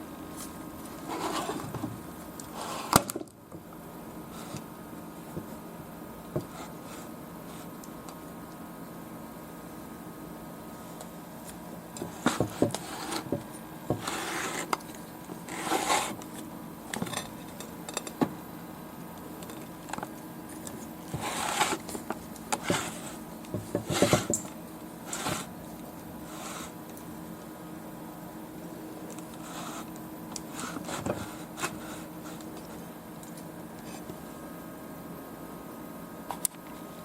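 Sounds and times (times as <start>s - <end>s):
rubbing or scraping: 0.4s - 1.7s, 12.1s - 14.7s, 15.5s - 16.2s, 21.1s - 21.9s, 25.0s - 25.5s.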